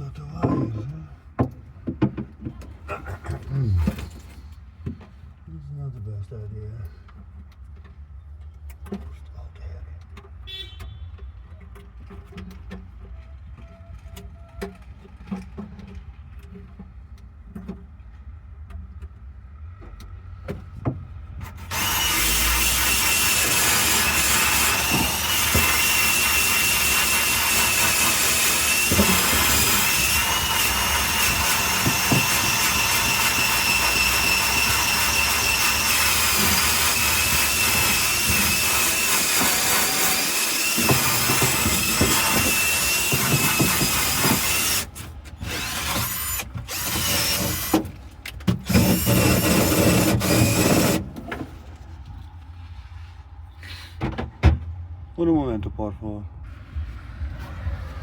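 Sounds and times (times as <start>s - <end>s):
power wire brush scrubbing metal: 21.7s - 47.8s, 48.6s - 51.2s.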